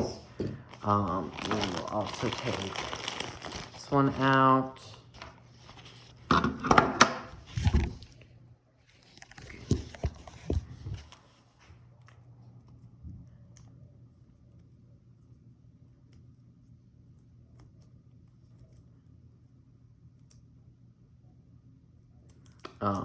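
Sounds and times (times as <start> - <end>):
packaging rustling: 0.0 - 6.3
faint steady hum: 0.0 - 23.0.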